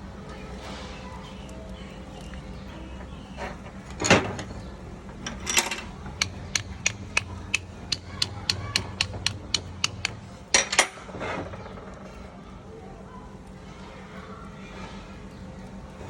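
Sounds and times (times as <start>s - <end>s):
steady low hum: 4.6s - 10.9s
evenly spaced clicks: 6.2s - 10.2s.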